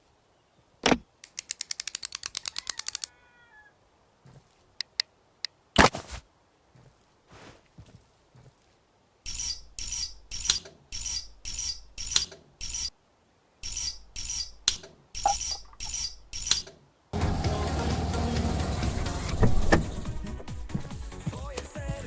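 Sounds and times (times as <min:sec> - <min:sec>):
ratcheting tool strokes: 0:01.2 - 0:03.0, 0:09.3 - 0:12.9, 0:13.6 - 0:16.8.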